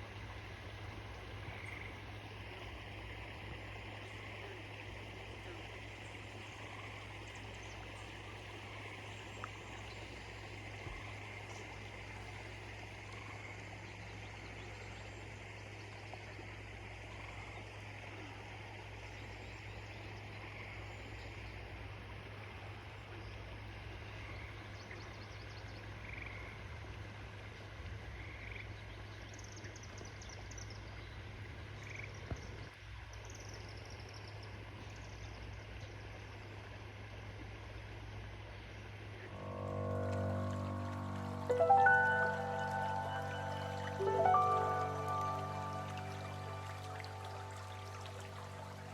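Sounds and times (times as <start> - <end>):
low hum: 39.2 - 48.9
frogs chirping: 39.3 - 48.9
waterfall running: 39.3 - 48.9.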